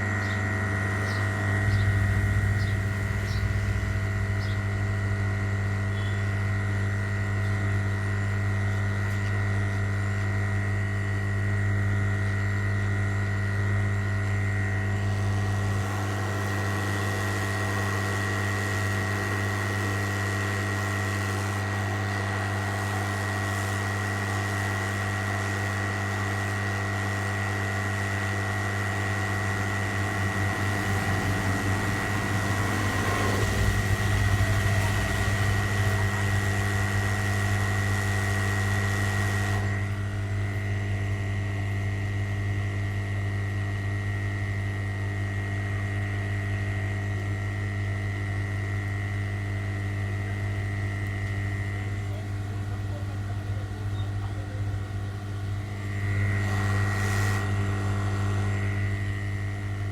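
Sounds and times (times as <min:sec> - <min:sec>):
high thin whine: 0:00.0 - 0:07.2, 0:27.9 - 0:40.4, 0:51.7 - 0:59.9
electrical hum: 0:00.0 - 0:59.9.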